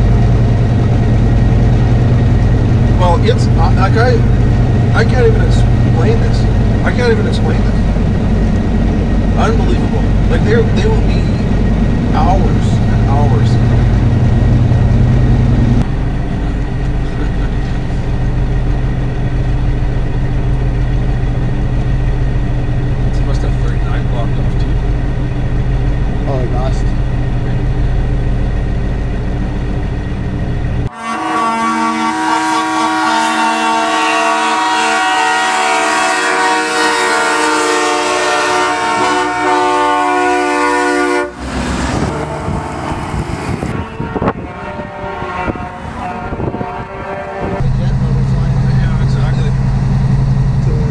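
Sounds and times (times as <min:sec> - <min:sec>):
heavy truck engine droning: 0:00.0 - 0:50.9
truck air horns: 0:30.8 - 0:47.7
wind on microphone: 0:41.8 - 0:47.6.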